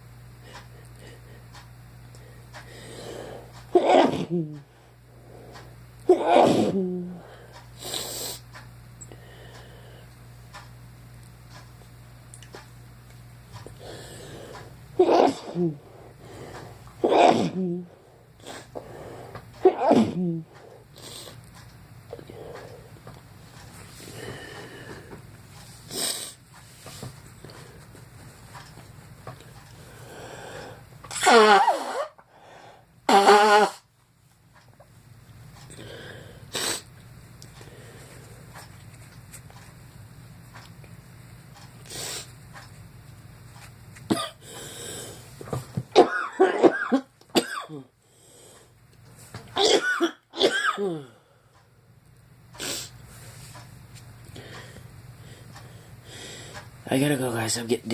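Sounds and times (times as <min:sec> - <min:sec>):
person coughing: 0:03.7 - 0:04.6, 0:06.1 - 0:07.2, 0:15.0 - 0:15.8, 0:17.0 - 0:17.9, 0:19.6 - 0:20.5, 0:44.1 - 0:44.4, 0:45.9 - 0:47.9, 0:49.6 - 0:51.2
person blowing nose loudly: 0:17.0 - 0:17.8, 0:25.9 - 0:26.4, 0:31.1 - 0:32.2, 0:33.1 - 0:33.9, 0:36.5 - 0:36.9.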